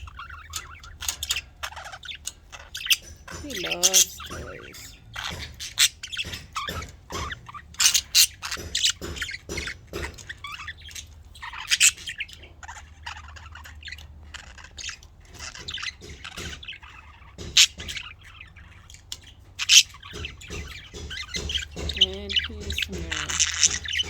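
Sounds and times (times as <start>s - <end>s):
budgerigars chirping: 0.0s - 24.0s
budgerigar squawks: 19.6s - 24.0s.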